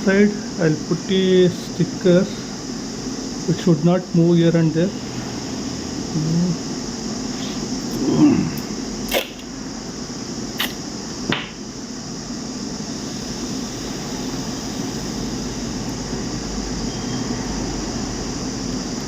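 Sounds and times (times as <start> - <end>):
fan humming and hissing: 0.0 - 19.0
short sharp clicks: 10.6 - 10.8.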